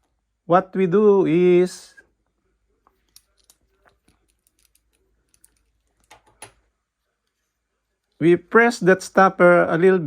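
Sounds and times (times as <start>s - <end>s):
small metal parts clicking: 3.0s - 6.6s.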